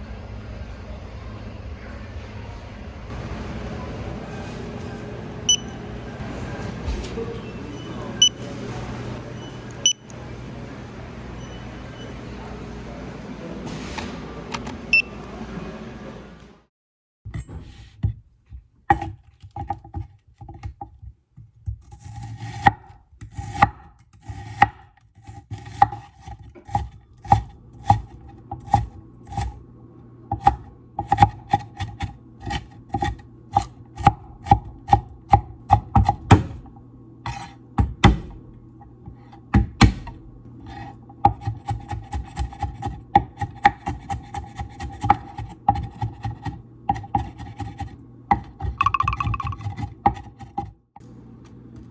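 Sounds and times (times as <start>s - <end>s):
knife cutting on wooden board: 37.3s - 38.2s, 39.8s - 48.5s.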